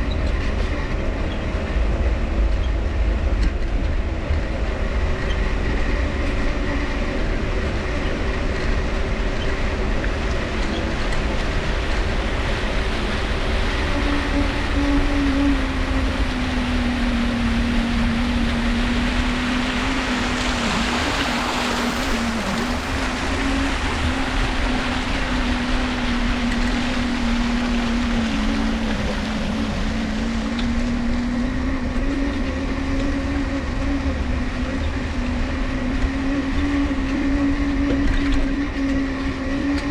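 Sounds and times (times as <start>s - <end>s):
bicycle dynamo humming whine: 0.0s - 39.9s
broad rushing noise: 0.0s - 39.9s
wind: 0.0s - 39.9s
tyres rumbling: 1.1s - 32.9s.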